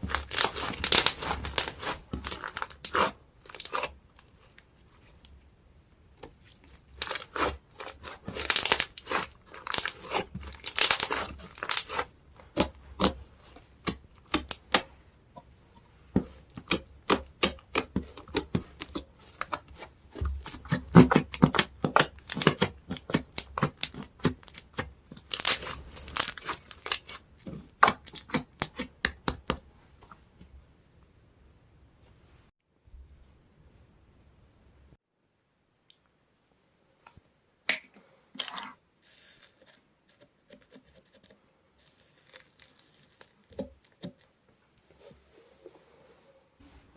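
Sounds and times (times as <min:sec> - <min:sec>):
slime squishing with sticky pops: 0:00.0 - 0:03.9, 0:07.0 - 0:14.9, 0:16.5 - 0:29.6.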